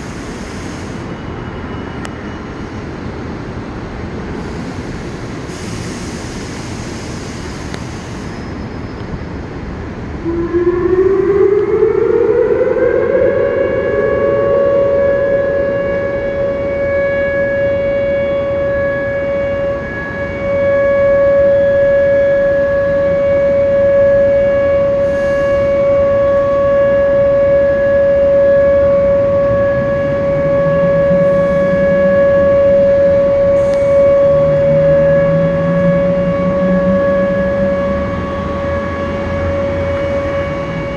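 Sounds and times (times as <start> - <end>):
warning siren winding up: 10.2 - 40.9
steady rushing noise: 28.6 - 40.9.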